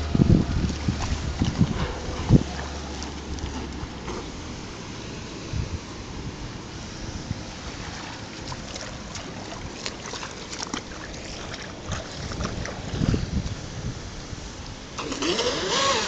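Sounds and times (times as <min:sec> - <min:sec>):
wind buffeting microphone: 0:00.0 - 0:16.0
short sharp ticks and splashes: 0:07.8 - 0:13.6.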